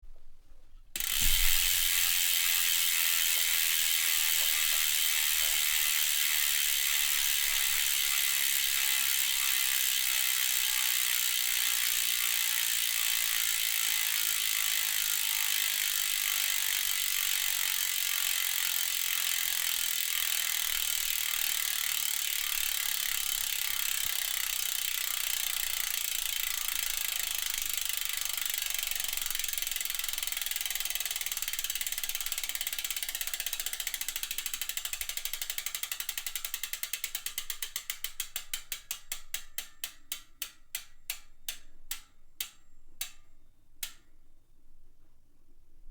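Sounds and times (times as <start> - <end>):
bicycle hub ratcheting: 0.9 - 44.0
thump: 1.2 - 1.7.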